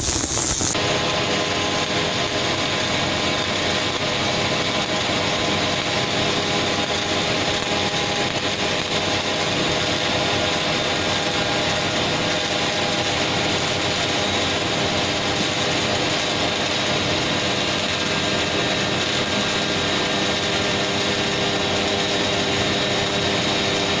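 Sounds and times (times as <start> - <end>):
welding machine humming: 0.0 - 0.8.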